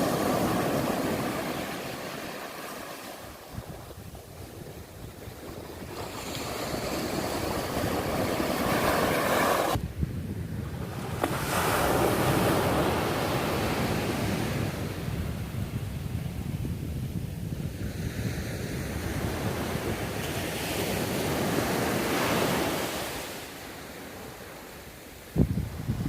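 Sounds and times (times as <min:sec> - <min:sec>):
sea waves washing onto shore: 0:00.0 - 0:09.8
wind rumbling on microphone: 0:03.1 - 0:23.2, 0:25.2 - 0:26.0.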